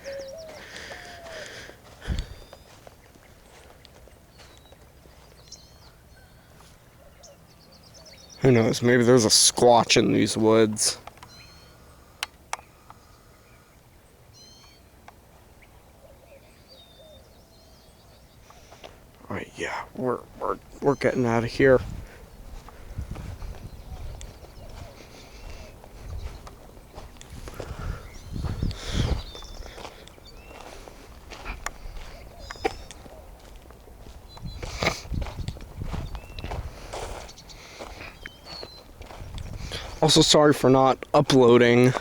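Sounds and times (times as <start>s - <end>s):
footsteps on a trail: 0.0s - 7.0s, 18.4s - 19.2s, 20.3s - 40.4s, 41.8s - 42.0s
faint creekside ambience: 0.0s - 42.0s
small birds chirping: 0.0s - 42.0s
sharp clicks: 11.0s - 11.4s, 12.2s - 13.0s.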